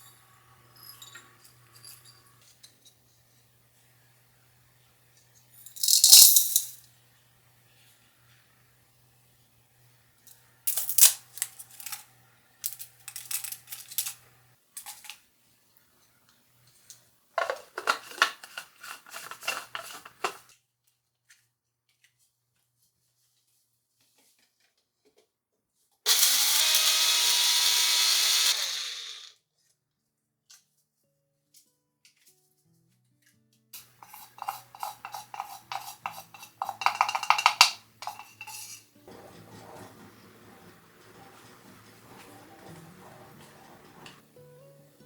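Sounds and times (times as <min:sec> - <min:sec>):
electric mixer grinder running: 0:26.1 - 0:29.3
rattling and clattering: 0:33.9 - 0:44.2.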